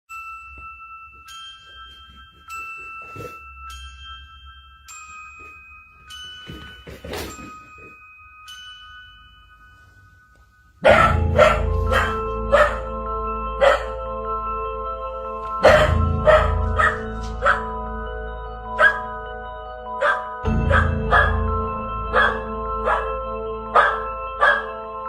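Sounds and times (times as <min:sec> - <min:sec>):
loud music with chiming notes: 0:00.1 - 0:25.0
slow bell-like melody: 0:00.1 - 0:25.0
dog barking: 0:10.8 - 0:12.9, 0:13.6 - 0:14.0, 0:15.6 - 0:17.7, 0:18.8 - 0:19.1, 0:20.0 - 0:21.4, 0:22.1 - 0:24.7.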